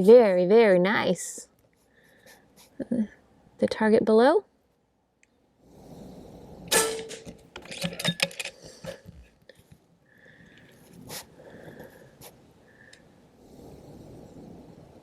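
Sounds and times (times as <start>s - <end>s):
clicks and light rattles: 7.0s - 9.7s.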